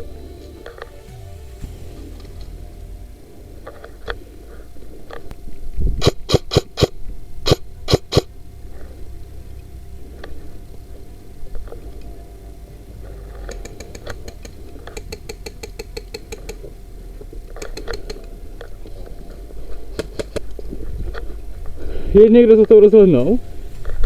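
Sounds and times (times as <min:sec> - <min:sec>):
low rumble: 0:00.0 - 0:24.0
airsoft guns firing: 0:06.0 - 0:08.3, 0:19.9 - 0:20.5.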